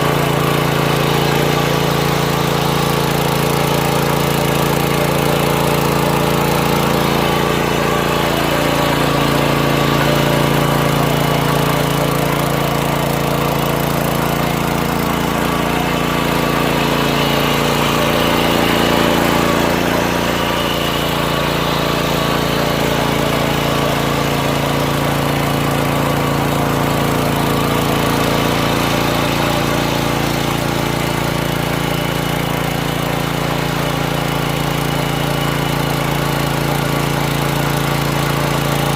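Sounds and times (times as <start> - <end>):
tiller engine running: 0.0 - 38.9.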